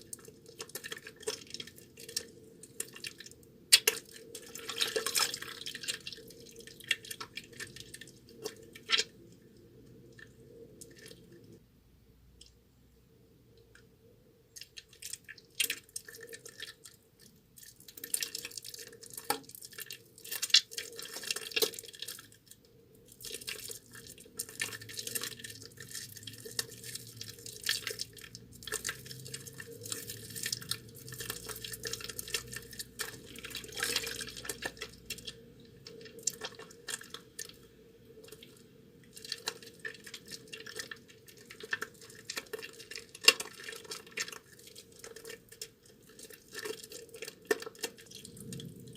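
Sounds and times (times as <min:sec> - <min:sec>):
wet soap lathering squishing: 0:00.0 - 0:11.5, 0:14.5 - 0:48.9.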